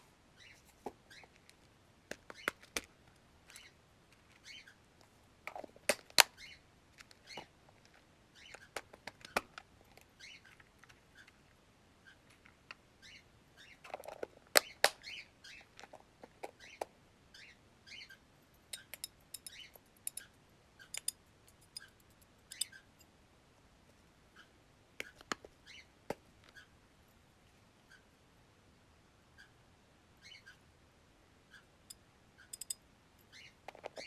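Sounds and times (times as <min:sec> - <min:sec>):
parrots chirping softly: 0:00.0 - 0:34.0
sharp clicks and taps: 0:18.7 - 0:20.2, 0:20.9 - 0:22.7, 0:32.5 - 0:32.8.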